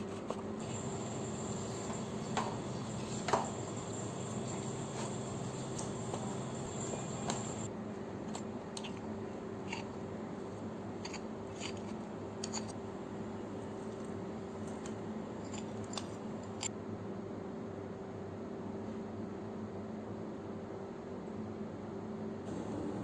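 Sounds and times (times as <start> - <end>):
steady hum: 0.0 - 7.7, 22.5 - 23.0
clicks and taps of kitchen utensils: 0.6 - 7.7.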